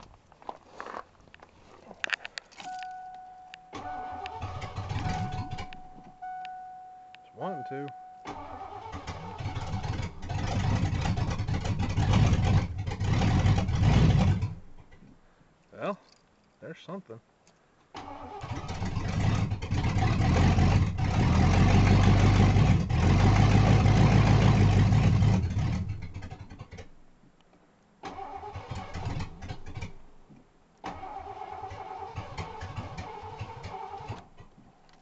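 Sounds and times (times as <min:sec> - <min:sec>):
starter motor cranking: 0:04.1 - 0:05.7, 0:08.3 - 0:14.6, 0:30.8 - 0:34.4
car engine running loud: 0:18.8 - 0:26.4.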